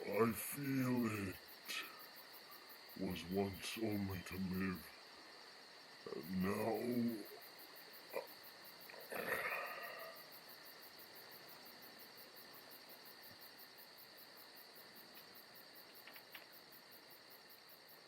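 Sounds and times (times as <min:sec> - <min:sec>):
crickets chirping: 0:00.0 - 0:18.0.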